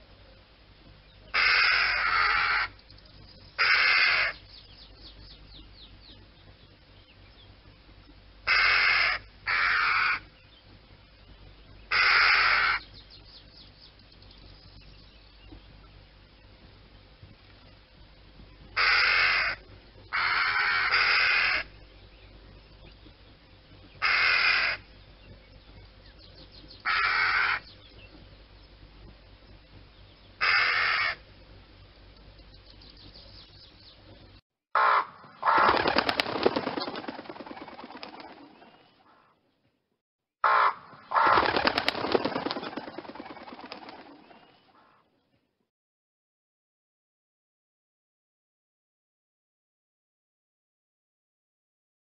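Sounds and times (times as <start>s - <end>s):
crow cawing: 1.4s - 2.8s, 3.6s - 4.4s, 8.5s - 10.3s, 11.9s - 12.9s, 18.8s - 21.7s, 24.0s - 24.8s, 26.9s - 27.7s, 30.4s - 31.2s, 34.8s - 35.7s, 40.4s - 41.4s.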